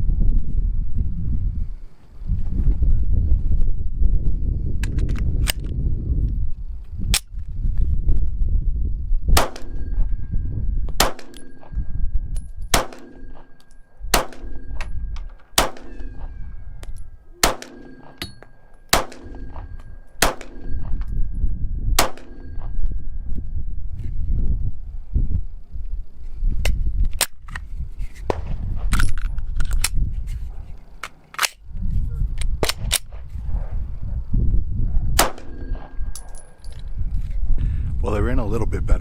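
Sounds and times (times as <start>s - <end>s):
pistol shots: 9.4s - 10.3s, 10.9s - 11.9s, 12.7s - 16.6s, 17.4s - 21.0s, 22.0s - 22.8s, 35.2s - 36.7s
metallic ringing of steel target: 9.4s - 23.3s, 35.2s - 36.8s.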